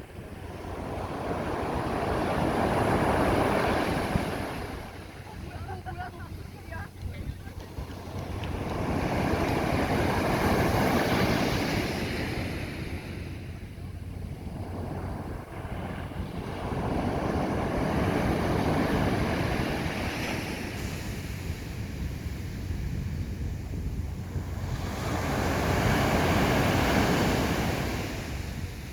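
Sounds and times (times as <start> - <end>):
waves breaking on beach: 0.0 - 28.9
wind rumbling on microphone: 0.0 - 28.9.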